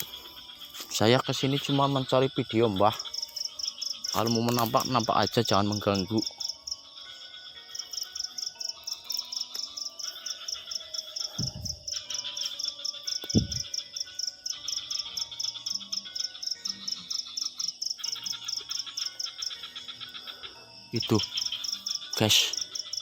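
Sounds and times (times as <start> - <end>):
crickets chirping: 0.0 - 23.0.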